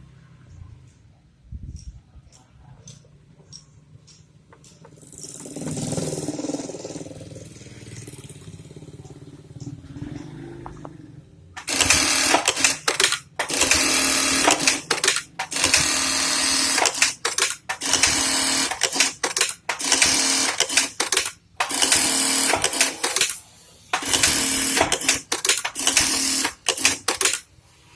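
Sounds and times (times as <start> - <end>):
sewing machine stitching: 4.9 - 7.2, 11.6 - 23.4, 24.0 - 27.4.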